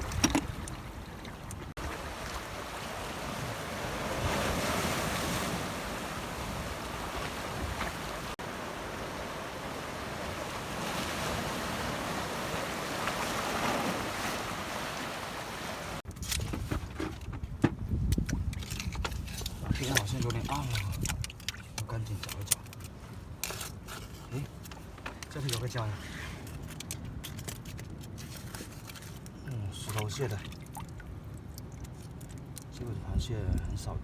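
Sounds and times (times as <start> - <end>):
sea surf washing in: 1.8 - 16.0
wind on microphone: 15.8 - 21.4.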